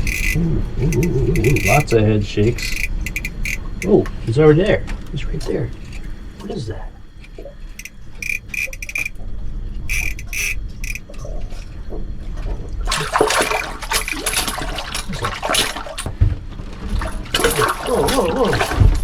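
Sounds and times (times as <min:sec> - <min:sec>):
short high buzzing bursts: 0:00.0 - 0:03.9, 0:07.7 - 0:09.2, 0:09.9 - 0:11.1
fish splashing in water: 0:00.0 - 0:04.1, 0:06.1 - 0:19.0.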